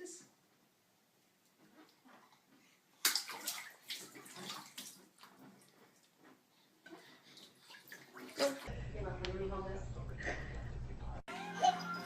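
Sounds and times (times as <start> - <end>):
water splashing: 3.0 - 6.0, 6.9 - 8.7.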